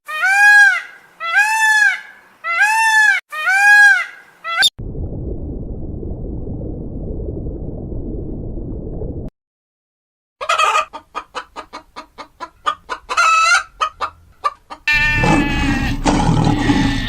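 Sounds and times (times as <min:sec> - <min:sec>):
low rumbling noise: 0:04.8 - 0:09.3
animal calling: 0:14.9 - 0:17.0.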